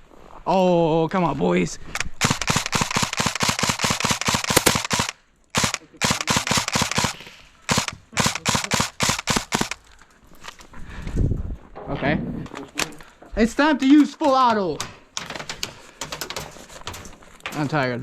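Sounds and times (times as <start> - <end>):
airsoft guns firing rapidly: 2.2 - 9.8.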